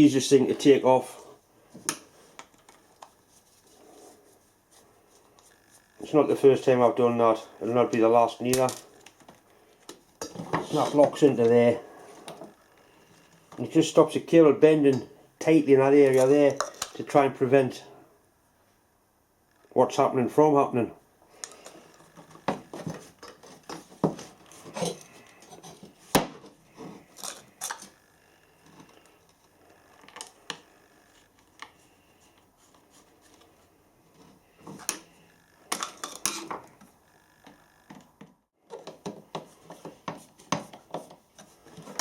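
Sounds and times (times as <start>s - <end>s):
small parts clicking and rattling: 27.1s - 28.0s.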